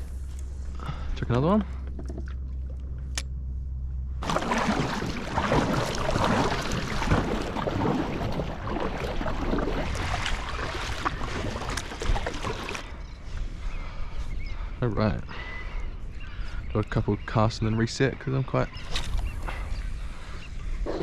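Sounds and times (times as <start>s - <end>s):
water splashing around kayak: 4.2s - 13.8s.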